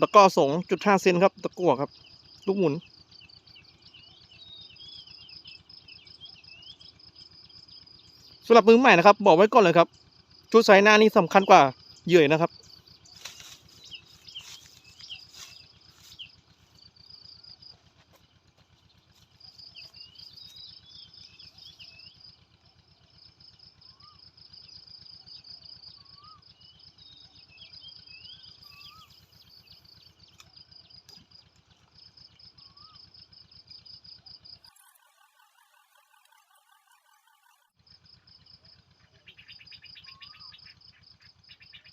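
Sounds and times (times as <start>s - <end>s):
insect pulsed trill: 0.0s - 41.9s
short bird chirps: 10.5s - 17.9s, 18.8s - 22.2s, 23.9s - 24.2s, 25.3s - 31.4s, 32.5s - 33.0s, 34.5s - 37.7s, 39.0s - 41.9s.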